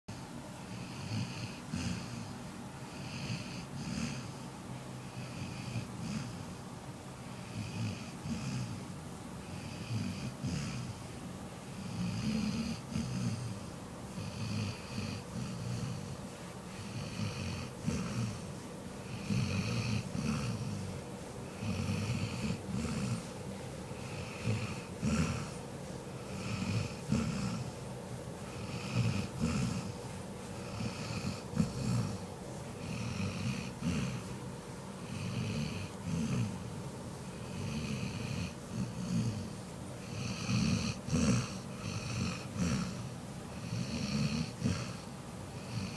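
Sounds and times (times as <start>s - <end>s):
person snoring: 9.4s - 11.0s, 11.7s - 18.4s, 19.0s - 20.9s, 21.5s - 23.3s, 23.9s - 25.6s, 26.2s - 27.8s, 28.5s - 30.0s, 30.6s - 32.2s, 32.8s - 34.3s, 35.0s - 36.6s, 37.3s - 45.0s, 45.6s - 45.9s.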